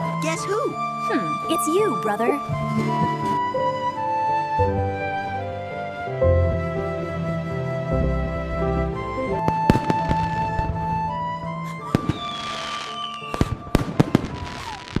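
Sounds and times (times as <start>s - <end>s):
soft instrumental music: 0.0s - 15.0s
fireworks cracking: 9.4s - 10.9s, 11.8s - 15.0s
firework whistle falling in pitch: 9.4s - 15.0s.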